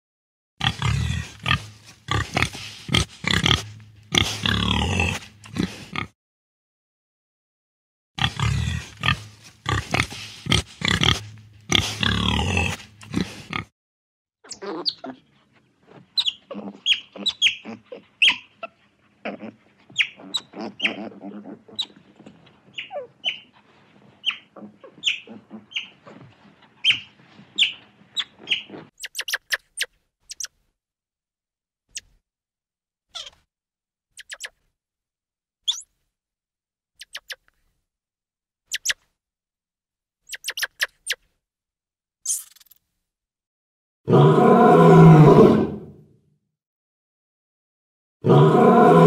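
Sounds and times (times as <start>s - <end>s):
pigs grunting and squealing: 0.6s - 6.2s, 8.2s - 13.7s, 16.4s - 22.0s, 24.6s - 26.1s, 44.1s - 46.0s, 48.2s - 49.0s.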